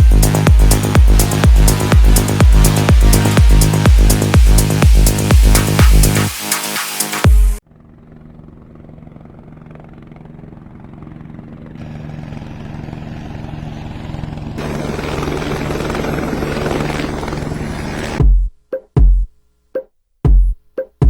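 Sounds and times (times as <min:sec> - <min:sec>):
bright hissing sound: 0:00.0 - 0:07.6
fast-pulsing motor: 0:00.0 - 0:07.6, 0:11.8 - 0:18.2.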